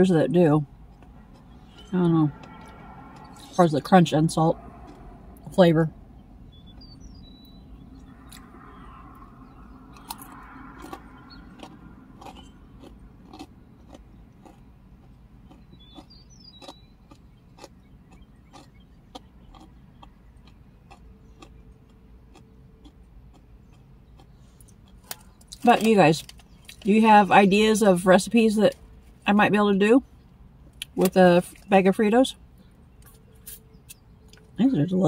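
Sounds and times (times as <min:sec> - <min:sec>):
person chewing crunchy chips: 0:09.9 - 0:26.9.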